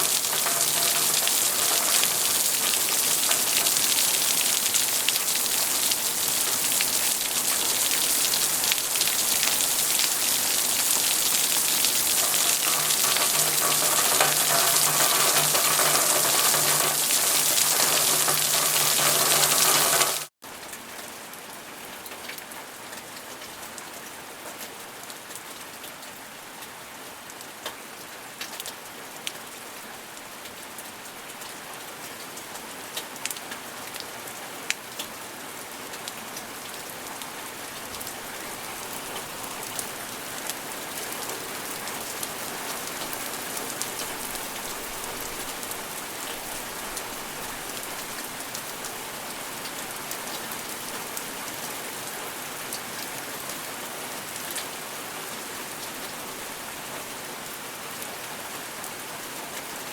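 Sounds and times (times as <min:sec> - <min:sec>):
raindrop clicks: 0:00.0 - 0:20.3
steady rain falling: 0:00.0 - 0:59.9.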